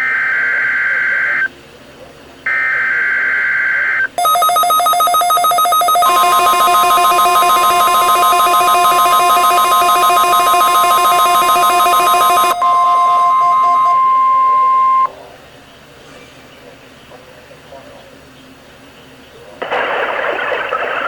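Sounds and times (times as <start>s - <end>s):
buzzy digital data burst: 4.2s - 12.6s
rapidly pulsing alert tone: 4.2s - 15.1s
steady warning alarm tone: 4.2s - 15.1s.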